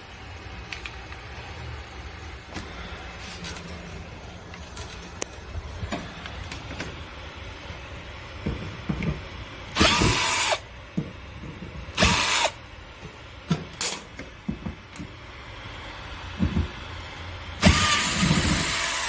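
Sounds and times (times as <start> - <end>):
cordless drill backing out screws: 9.7 - 10.6, 12.0 - 12.6, 17.6 - 19.0.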